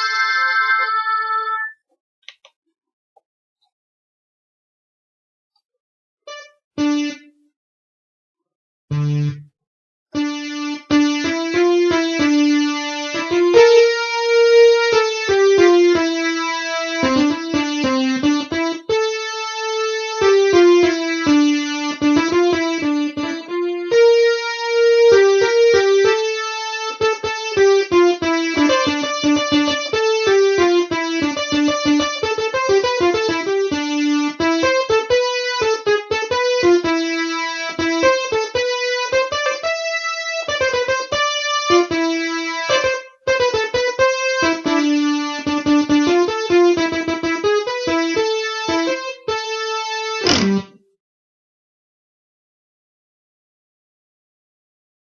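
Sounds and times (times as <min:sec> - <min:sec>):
synthesizer keyboard melody: 0:00.0 - 0:01.8, 0:06.3 - 0:07.4, 0:08.9 - 0:09.5, 0:10.2 - 0:50.8.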